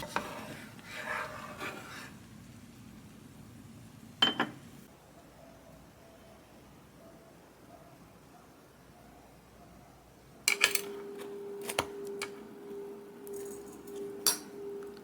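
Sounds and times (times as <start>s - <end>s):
kitchenware clinking and tapping: 4.2s - 4.6s, 10.5s - 12.4s, 13.3s - 14.9s
steady hum: 10.8s - 15.0s.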